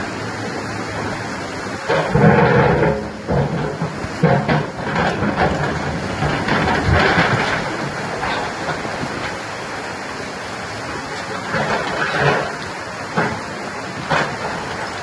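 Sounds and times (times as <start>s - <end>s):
diesel engine under load: 0.0s - 15.0s
rock crunching and grinding: 1.9s - 9.4s.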